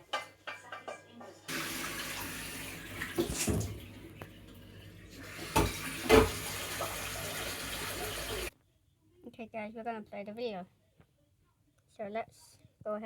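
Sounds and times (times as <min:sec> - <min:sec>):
water running with rushing hiss: 0:01.5 - 0:08.5
knocks and thumps: 0:03.0 - 0:04.4, 0:05.4 - 0:07.0.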